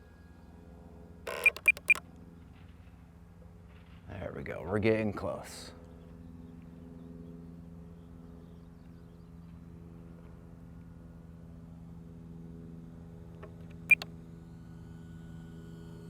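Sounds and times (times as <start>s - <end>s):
sharp click: 1.3s - 2.0s
short high beep: 1.3s - 2.0s.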